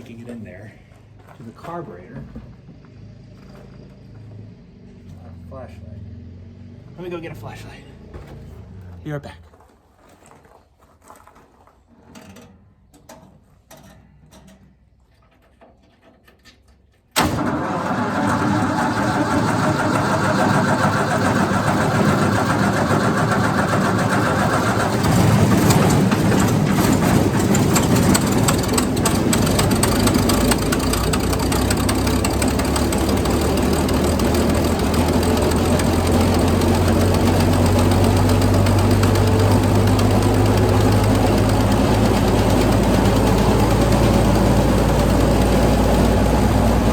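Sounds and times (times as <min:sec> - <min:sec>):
wood chipper engine running: 0:17.2 - 0:46.9.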